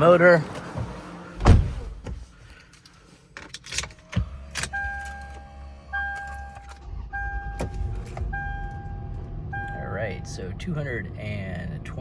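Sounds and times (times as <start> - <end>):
keys rattling in ignition: 2.6 - 8.9
car engine starting and idling: 3.4 - 12.0
dashboard warning chime: 4.7 - 10.6.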